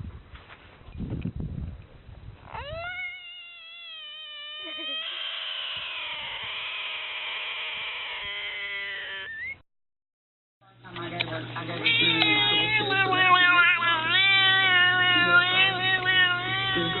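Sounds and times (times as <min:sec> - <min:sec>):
animal's long drawn-out call: 0:02.5 - 0:09.5.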